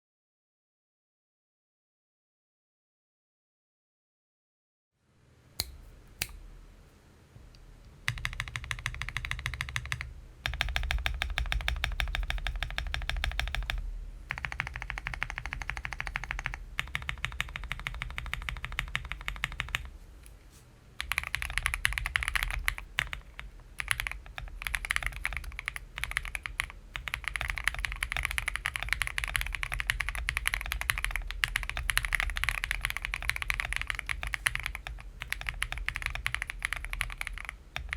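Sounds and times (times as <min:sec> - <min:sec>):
mechanical keyboard typing: 0:08.1 - 0:19.9, 0:21.0 - 0:37.9.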